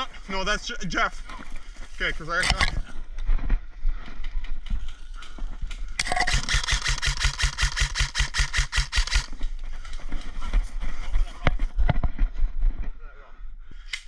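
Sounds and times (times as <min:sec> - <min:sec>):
scattered clicks and knocks: 0:02.4 - 0:02.8, 0:06.0 - 0:09.4
airsoft gun full-auto burst: 0:06.0 - 0:09.3.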